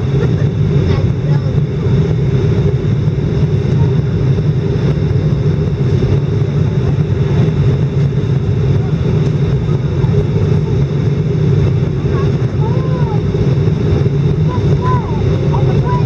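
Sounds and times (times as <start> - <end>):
airliner cabin roar: 0.0 - 16.0.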